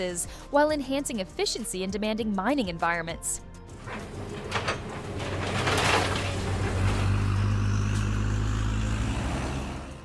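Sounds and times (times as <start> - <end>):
heavy machine engine hum: 3.7 - 10.0.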